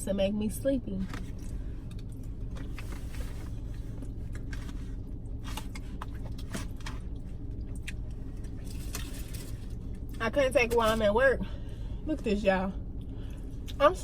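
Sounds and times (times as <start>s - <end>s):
low car interior hum: 0.0s - 14.0s
person chewing food: 3.7s - 9.5s.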